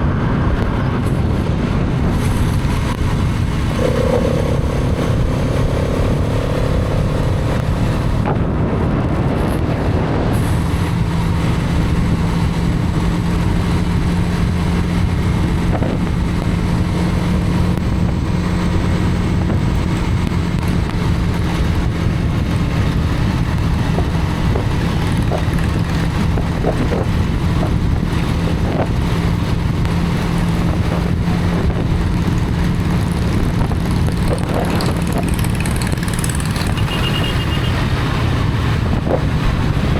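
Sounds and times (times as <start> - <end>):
motorcycle engine cruising: 0.0 - 39.9
road rumble: 0.0 - 39.9
wind on microphone: 0.0 - 39.9.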